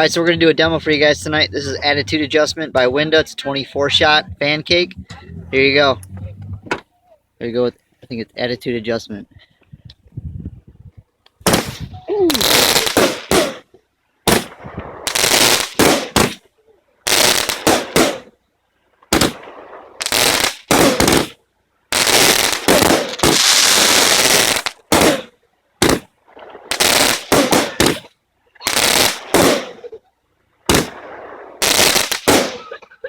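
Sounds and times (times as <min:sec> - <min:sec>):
fireworks shots and bursts: 0:11.4 - 0:16.4, 0:17.1 - 0:18.3, 0:19.1 - 0:26.1, 0:26.7 - 0:28.1, 0:28.7 - 0:29.9, 0:30.7 - 0:32.7.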